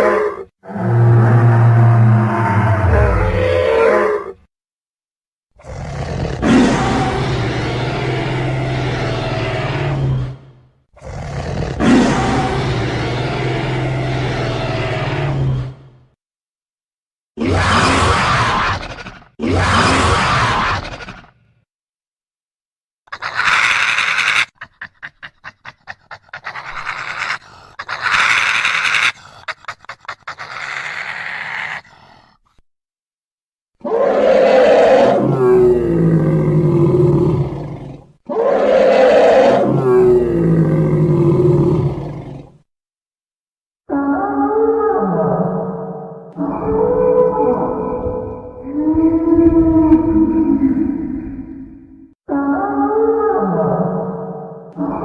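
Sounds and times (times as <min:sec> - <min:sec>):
dinosaur roar: 0:00.0 - 0:04.4, 0:05.6 - 0:16.0, 0:33.8 - 0:42.6, 0:43.9 - 0:55.0
harsh dinosaur calls: 0:00.0 - 0:04.4, 0:23.1 - 0:32.3, 0:33.8 - 0:42.6.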